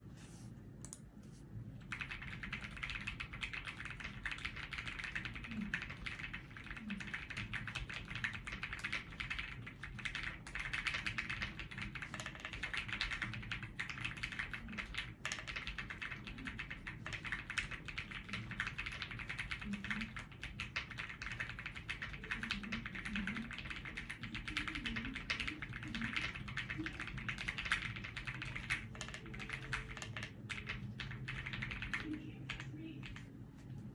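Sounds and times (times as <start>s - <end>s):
fast typing on mechanical keyboard: 1.8s - 33.3s.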